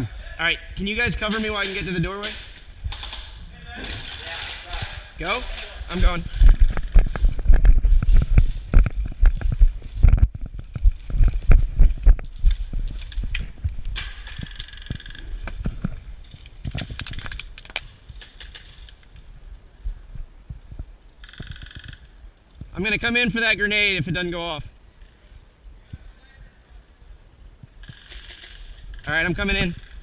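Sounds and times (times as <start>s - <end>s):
running footsteps: 0.7s - 17.1s
gear rattling: 0.8s - 19.0s.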